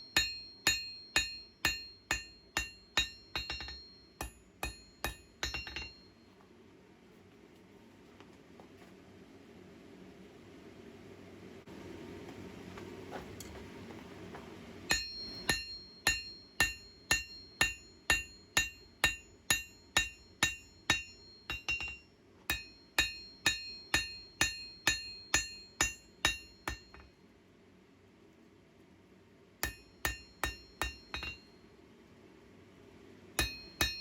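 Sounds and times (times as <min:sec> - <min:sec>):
hammer striking metal on anvil: 0:00.0 - 0:06.2, 0:14.9 - 0:27.1, 0:29.6 - 0:31.6, 0:33.4 - 0:34.0
low steady rumble: 0:00.0 - 0:34.0.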